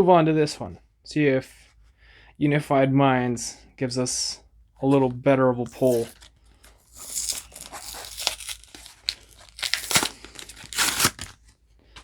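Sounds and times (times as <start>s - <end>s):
card tearing: 4.9s - 11.6s
plastic blister pack crinkling: 4.9s - 12.0s.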